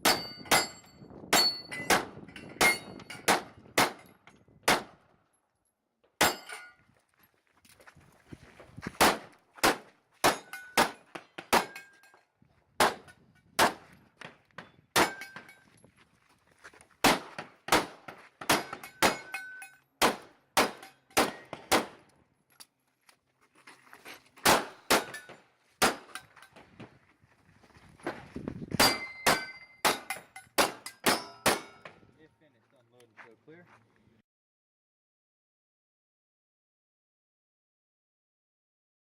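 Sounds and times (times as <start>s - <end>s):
ringing steel targets: 0.0s - 4.8s, 6.2s - 6.8s, 10.2s - 13.8s, 14.6s - 15.8s, 18.4s - 21.9s, 24.5s - 26.6s, 28.8s - 32.0s
pistol shots: 1.4s - 4.1s, 4.7s - 5.0s, 9.0s - 11.9s, 12.8s - 13.8s, 15.0s - 15.4s, 17.0s - 19.4s, 20.0s - 22.0s, 24.4s - 26.2s, 28.8s - 31.9s.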